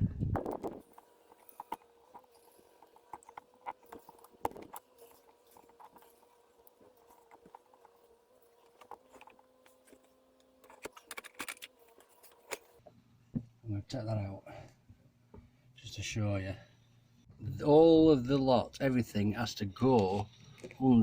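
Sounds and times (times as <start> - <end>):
faint steady hum: 0.0 - 21.0
plastic strip clicking and rubbing: 0.4 - 12.8.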